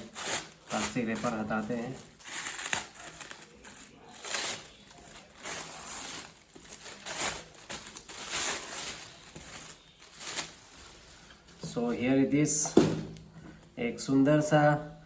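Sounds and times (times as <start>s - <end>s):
plastic wrapper crinkling: 0.0s - 11.8s.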